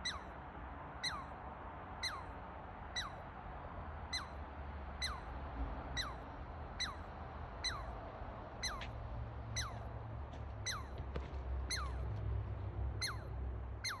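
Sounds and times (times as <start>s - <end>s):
chipmunk chipping: 0.0s - 0.3s, 1.0s - 1.3s, 2.0s - 2.3s, 5.0s - 5.2s, 6.0s - 6.2s, 7.6s - 8.0s, 8.6s - 8.9s, 9.6s - 9.9s, 10.6s - 11.0s, 11.7s - 12.1s, 13.0s - 14.0s.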